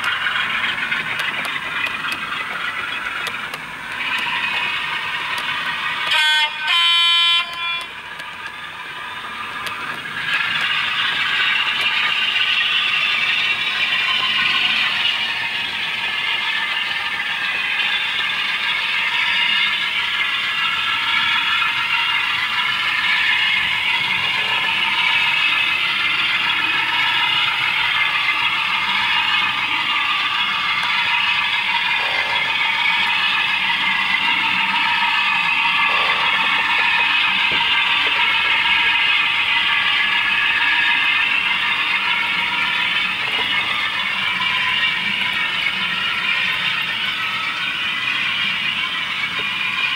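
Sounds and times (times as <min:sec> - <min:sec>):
model train running noise: 0:00.0 - 0:49.9
tinny locomotive sound speaker: 0:00.0 - 0:49.9
two-tone diesel horn: 0:06.0 - 0:08.0.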